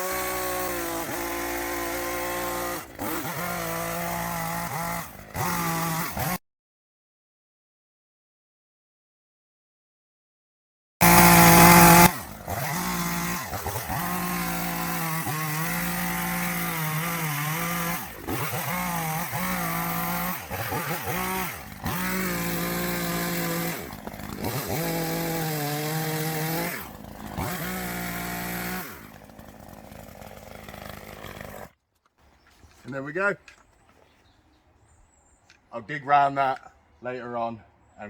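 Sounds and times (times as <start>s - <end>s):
chainsaw cutting wood: 0.0s - 6.4s, 11.0s - 32.2s.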